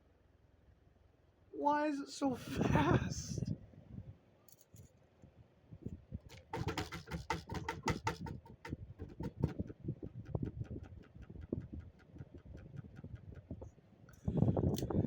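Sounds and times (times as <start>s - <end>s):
rapid even ticking: 6.3s - 13.8s.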